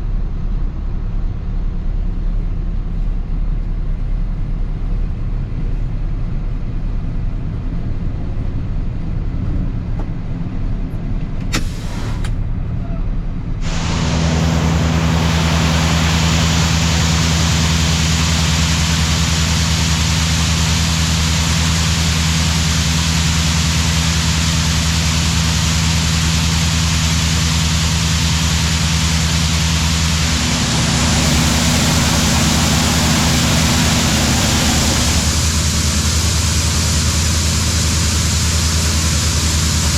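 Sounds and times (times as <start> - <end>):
diesel farm machinery running: 0.0 - 39.9
low engine hum: 0.0 - 39.9
loud rushing machine hiss: 11.5 - 12.4, 13.6 - 39.9.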